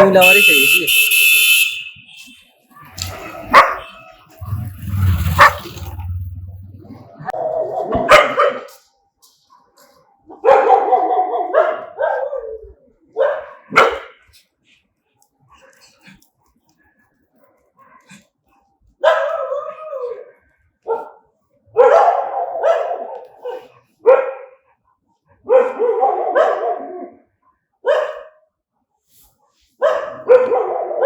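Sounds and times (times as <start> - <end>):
dogs barking aggressively: 2.8 - 6.1, 7.2 - 8.8, 10.3 - 14.3, 19.0 - 20.2, 20.8 - 24.8, 25.4 - 27.2, 27.8 - 28.4, 29.8 - 31.0.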